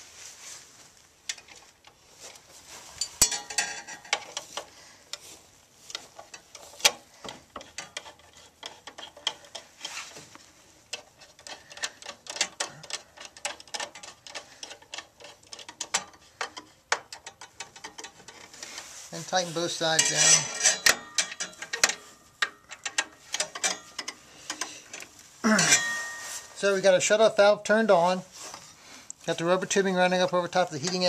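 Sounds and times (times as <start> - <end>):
screwdriver clicking on metal: 5.9 - 9.7, 10.9 - 18.6, 19.9 - 25.0.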